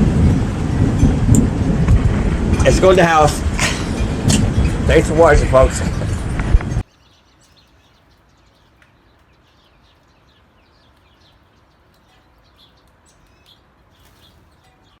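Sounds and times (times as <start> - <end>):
small birds chirping: 4.0 - 15.0.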